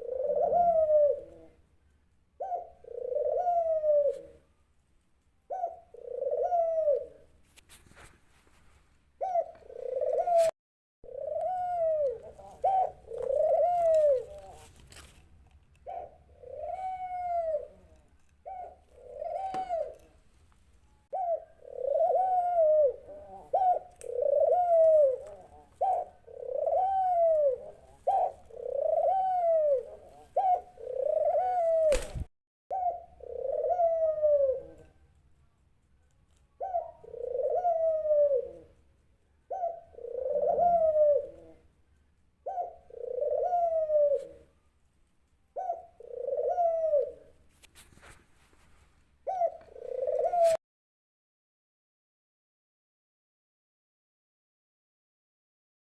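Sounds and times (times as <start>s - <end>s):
dove cooing: 0.0s - 1.6s, 2.4s - 4.5s, 5.5s - 7.3s, 9.2s - 10.5s, 11.1s - 14.8s, 15.8s - 20.2s, 21.1s - 35.0s, 36.5s - 41.8s, 42.4s - 44.6s, 45.5s - 47.5s, 49.2s - 50.6s.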